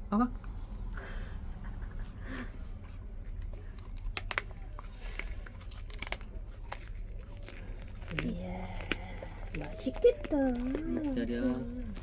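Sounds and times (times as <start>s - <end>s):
food being chewed: 1.9s - 12.0s
crinkling: 2.7s - 12.0s.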